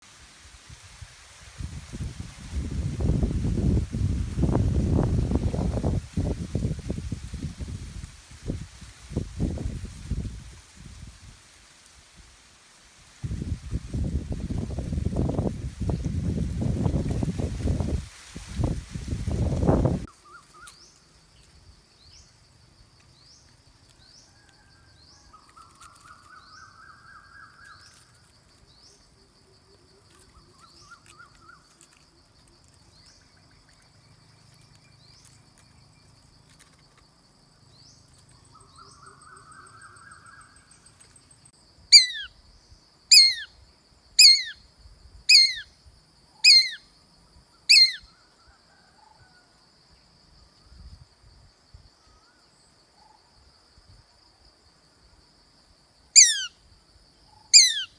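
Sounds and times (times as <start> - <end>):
high insect whine: 0.4 - 57.9
hawk screaming calls: 41.9 - 42.3, 43.1 - 43.5, 44.2 - 44.6, 45.3 - 45.6, 46.4 - 46.8, 47.7 - 48.0, 56.2 - 56.5, 57.5 - 57.9.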